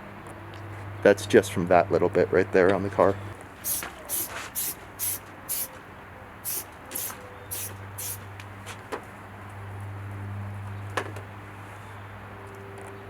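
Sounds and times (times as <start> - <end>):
trigger spray bottle spritzing: 3.6 - 5.8, 6.4 - 8.3.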